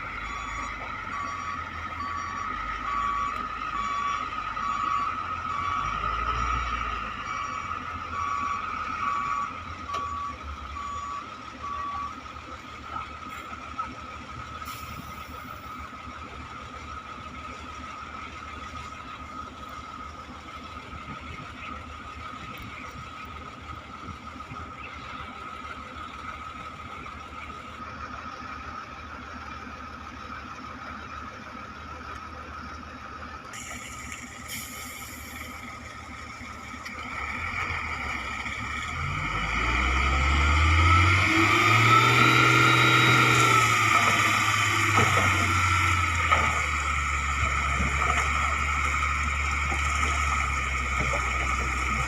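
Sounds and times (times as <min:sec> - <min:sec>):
reversing alarm beeping: 0:00.0 - 0:12.4, 0:38.6 - 0:49.2
heavy machinery engines running: 0:00.0 - 0:52.0.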